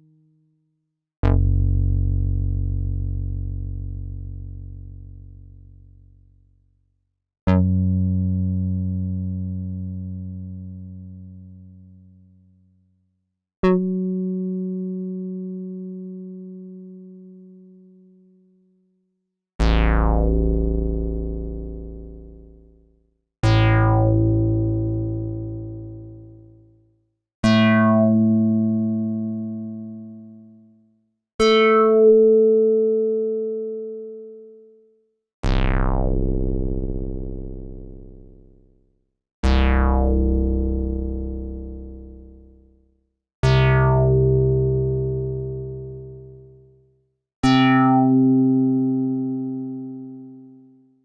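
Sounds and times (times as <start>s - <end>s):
deep synthesizer bass notes: 1.2s - 6.0s, 19.6s - 22.8s, 23.4s - 26.4s, 27.4s - 28.4s, 35.4s - 38.7s, 39.4s - 42.5s, 43.4s - 46.5s, 47.4s - 49.6s
synthesizer bass notes: 39.4s - 41.6s, 43.4s - 44.3s, 47.4s - 48.3s.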